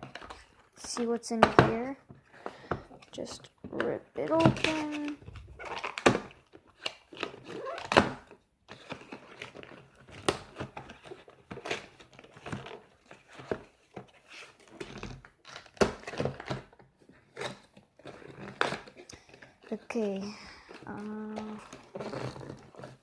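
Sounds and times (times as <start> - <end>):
packaging ripped and crinkled: 4.6 - 13.4.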